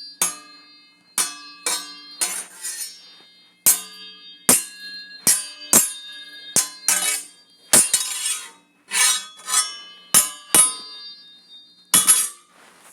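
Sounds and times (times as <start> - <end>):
metal blades clashing: 0.2 - 3.0, 3.6 - 10.9, 11.9 - 12.5
blade scraping on blade: 1.7 - 3.0, 6.9 - 10.8, 12.0 - 12.5.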